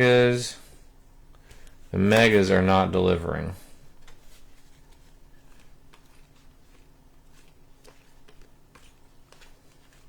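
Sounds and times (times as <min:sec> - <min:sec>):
trading cards clicking and rustling: 0:01.4 - 0:02.6, 0:04.0 - 0:10.0.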